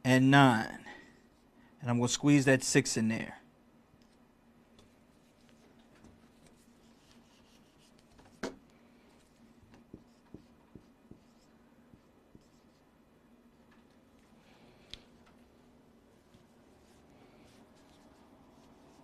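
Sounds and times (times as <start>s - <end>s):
faint steady hum: 0.0s - 19.0s
pen scratching on paper: 6.3s - 8.1s, 9.2s - 12.8s.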